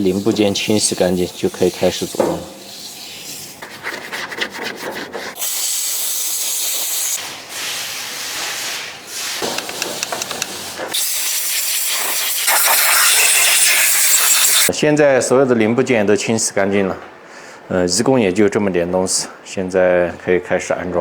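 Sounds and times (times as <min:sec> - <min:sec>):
pressurised cleaning jet hissing: 0:10.9 - 0:14.7.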